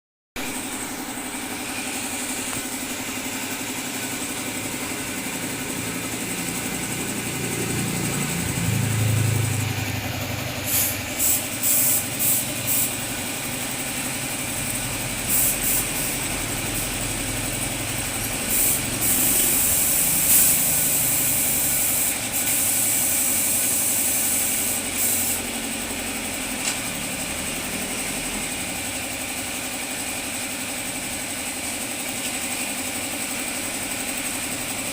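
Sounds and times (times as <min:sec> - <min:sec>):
motor running: 0:00.4 - 0:34.8
hissing bursts: 0:10.6 - 0:13.0.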